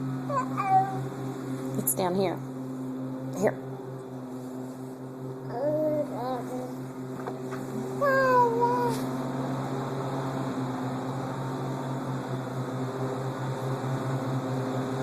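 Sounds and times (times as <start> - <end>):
low mechanical hum: 0.0 - 15.0
young child's vocal sound: 8.0 - 9.1.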